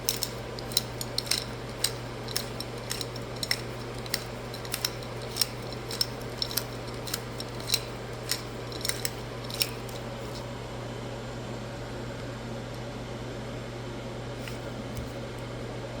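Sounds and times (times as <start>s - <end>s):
utensils clinking on dishware: 0.0s - 10.5s
steady low hum: 0.0s - 12.2s.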